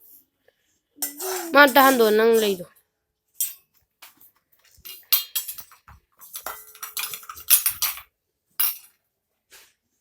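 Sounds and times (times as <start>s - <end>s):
kitchen utensils clinking and scraping: 1.0s - 2.7s, 3.4s - 9.0s.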